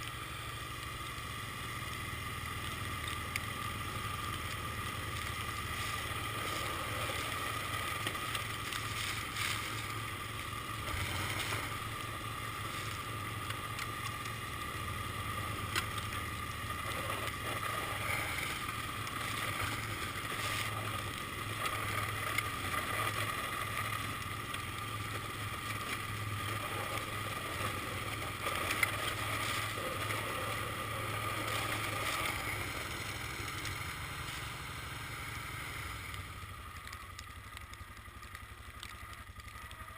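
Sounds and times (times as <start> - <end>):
snowblower engine running: 0.0 - 39.9.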